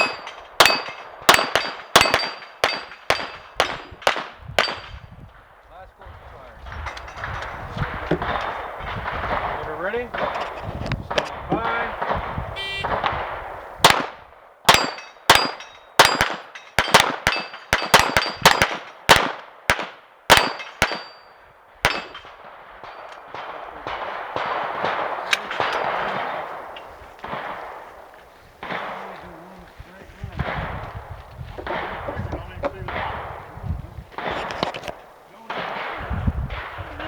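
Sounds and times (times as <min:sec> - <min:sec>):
pistol shots: 0:00.0 - 0:05.0, 0:11.1 - 0:27.9, 0:28.6 - 0:29.2, 0:35.4 - 0:36.8
steel targets clanging: 0:00.0 - 0:05.0, 0:14.7 - 0:19.0, 0:20.3 - 0:23.2.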